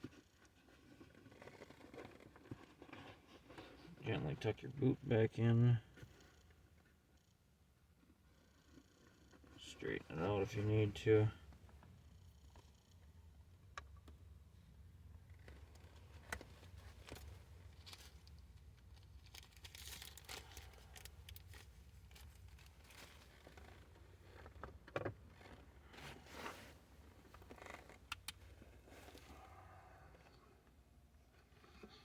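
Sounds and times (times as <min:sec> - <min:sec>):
leather rustling and scraping: 0:00.1 - 0:04.0, 0:19.0 - 0:24.6, 0:25.3 - 0:28.1.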